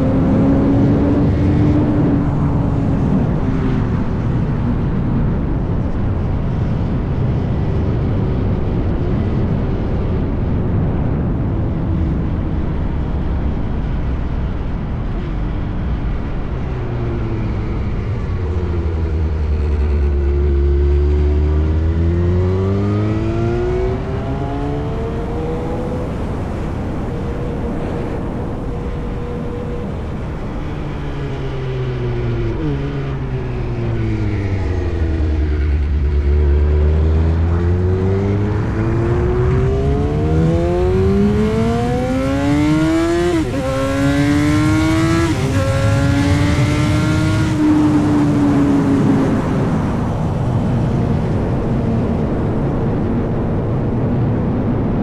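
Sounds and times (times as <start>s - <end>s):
motorcycle engine revving: 0.0s - 6.0s, 18.3s - 53.4s.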